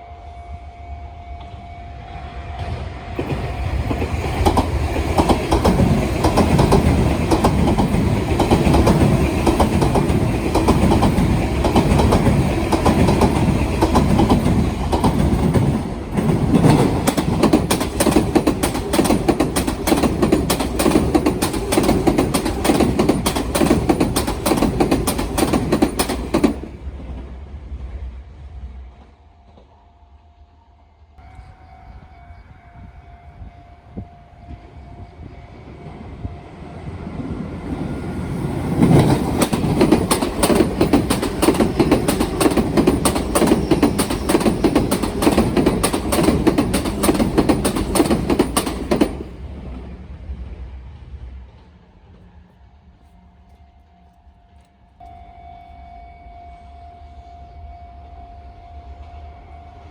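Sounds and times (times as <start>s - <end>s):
train wheels clattering over rail joints: 3.2s - 27.3s, 38.4s - 49.8s.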